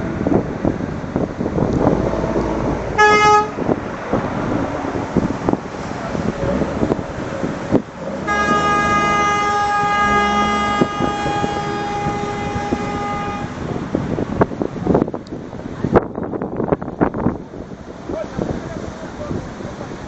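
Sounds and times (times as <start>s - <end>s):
constant rushing noise: 0.0s - 20.0s
vehicle horn long blast: 3.0s - 3.6s, 8.2s - 13.7s.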